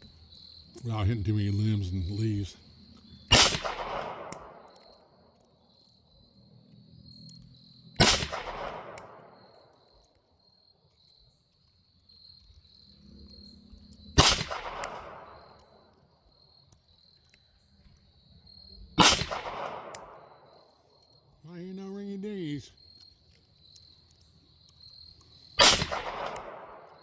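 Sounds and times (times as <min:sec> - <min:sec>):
crickets chirring: 0:00.0 - 0:27.0
pistol shots with echo: 0:03.3 - 0:04.8, 0:08.0 - 0:09.6, 0:14.2 - 0:15.7, 0:19.0 - 0:20.4, 0:25.6 - 0:27.0.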